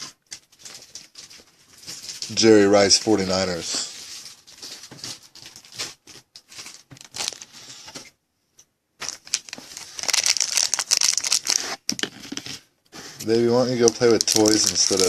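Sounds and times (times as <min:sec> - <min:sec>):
card pack wrapper crinkling: 0:00.3 - 0:07.7, 0:09.0 - 0:12.4, 0:13.3 - 0:15.0
cards being handled: 0:09.0 - 0:15.0.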